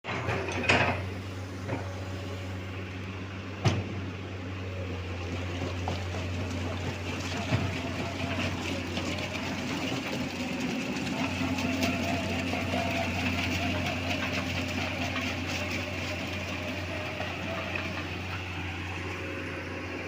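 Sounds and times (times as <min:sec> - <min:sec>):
heavy diesel engine running: 0:00.0 - 0:20.0.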